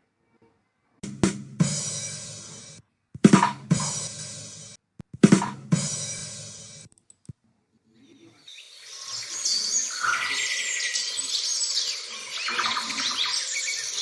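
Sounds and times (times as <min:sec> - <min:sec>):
drum hits: 0:01.0 - 0:06.9.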